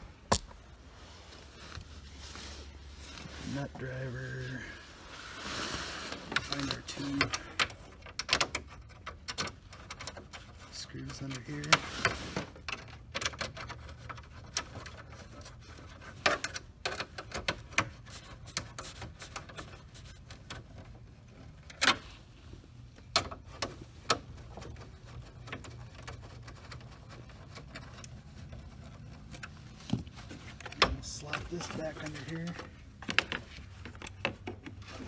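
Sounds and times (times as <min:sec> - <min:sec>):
clicks taps and rubbing: 0:22.9 - 0:35.0.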